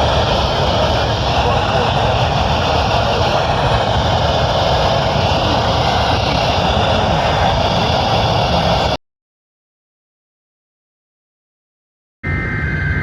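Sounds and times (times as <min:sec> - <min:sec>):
loud rushing noise: 0:00.0 - 0:09.0
low rumble: 0:00.0 - 0:09.0.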